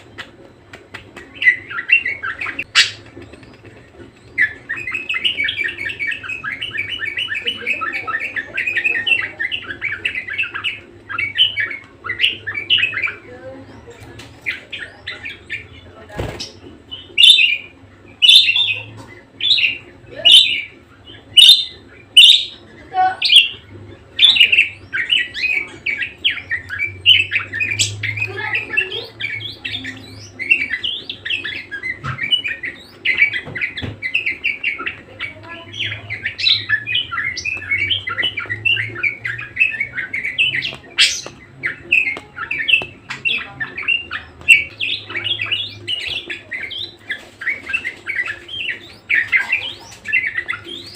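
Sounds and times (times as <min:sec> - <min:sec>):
budgerigar chattering: 0:01.3 - 0:50.9.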